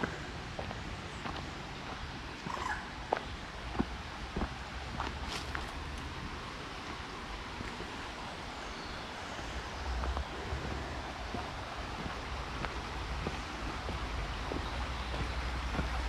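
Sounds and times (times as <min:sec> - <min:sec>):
river rushing: 0:00.0 - 0:16.0
wind buffeting microphone: 0:09.5 - 0:16.0.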